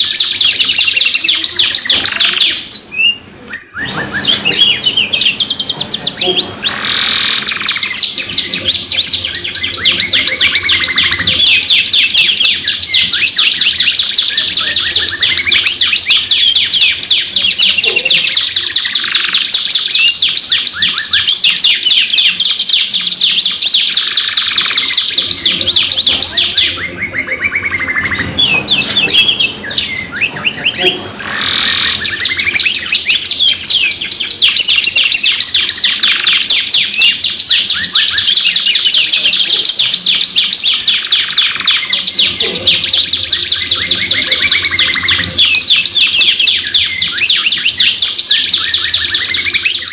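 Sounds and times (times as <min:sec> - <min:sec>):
canaries trilling: 0:00.0 - 0:49.9.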